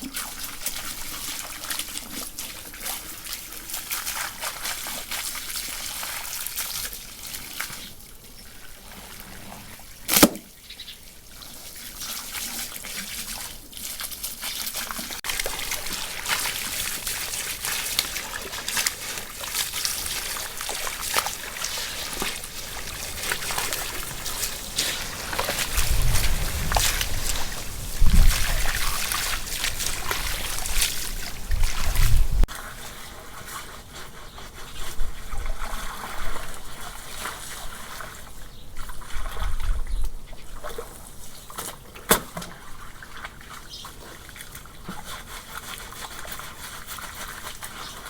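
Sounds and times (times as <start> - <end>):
water trickling and splashing: 0.0 - 48.0
sharp knock: 10.1 - 10.5.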